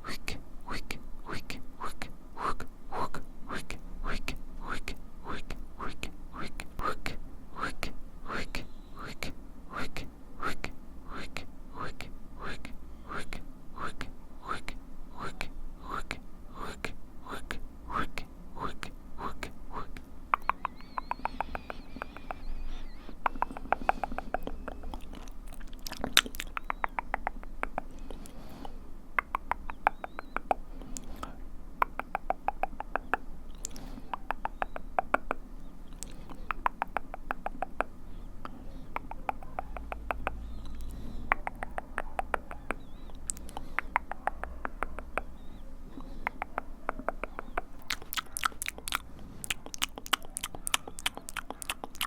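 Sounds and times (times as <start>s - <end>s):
wet mouth clicks and smacks: 16.0s - 52.0s.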